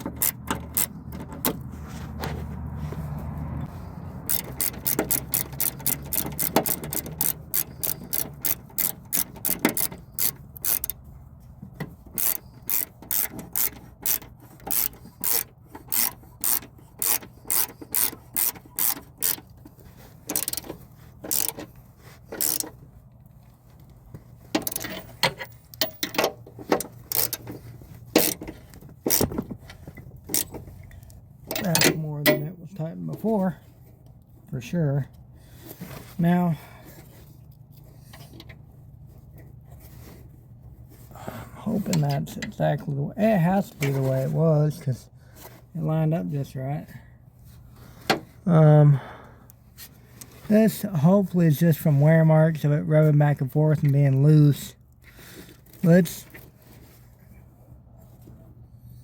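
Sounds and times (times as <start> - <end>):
ratchet wrench clicking: 0.0 - 1.1, 4.2 - 11.0, 12.2 - 19.6, 20.2 - 21.6, 22.3 - 22.7, 24.6 - 26.3, 27.1 - 27.5, 28.2 - 28.4.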